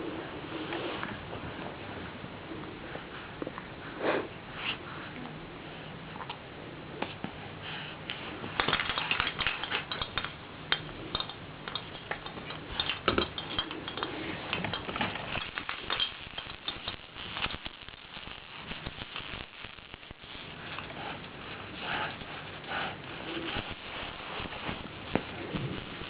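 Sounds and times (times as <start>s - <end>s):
baby rattles clattering: 8.6s - 10.3s, 11.1s - 17.5s.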